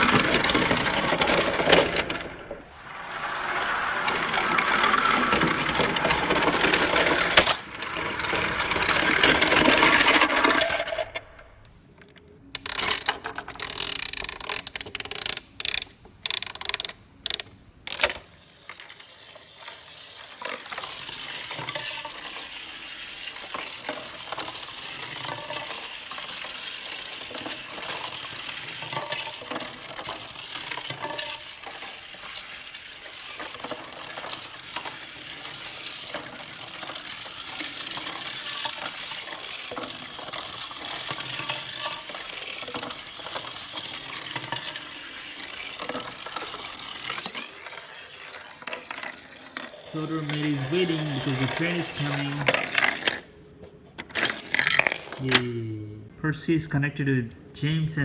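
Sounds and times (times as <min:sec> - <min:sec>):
toy train pieces clicking: 0:06.4 - 0:08.0, 0:11.7 - 0:55.9.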